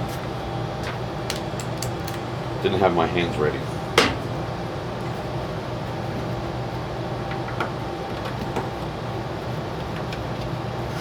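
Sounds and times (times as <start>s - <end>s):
workshop hum: 0.0s - 11.0s
small parts clicking and tapping: 1.3s - 2.2s.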